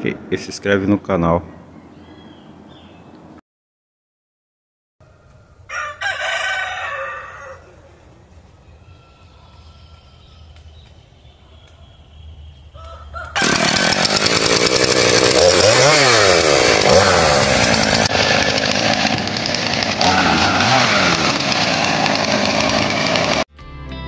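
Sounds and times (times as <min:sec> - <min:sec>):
yard background noise: 0:00.0 - 0:03.4, 0:05.0 - 0:13.8
chainsaw cutting wood: 0:13.3 - 0:23.5.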